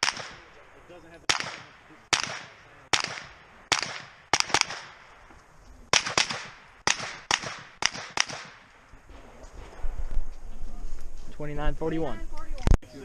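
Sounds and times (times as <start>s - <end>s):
rifle shots echoing: 0.0s - 5.3s, 5.9s - 10.1s.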